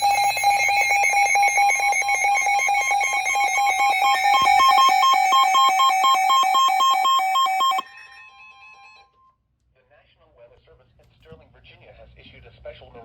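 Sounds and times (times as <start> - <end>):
pulsing electronic alert beeps: 0.0 - 8.0.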